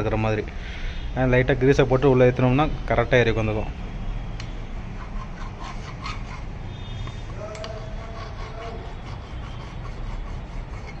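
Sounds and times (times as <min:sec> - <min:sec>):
hand file rasping on metal: 0:05.0 - 0:06.5, 0:07.2 - 0:11.0.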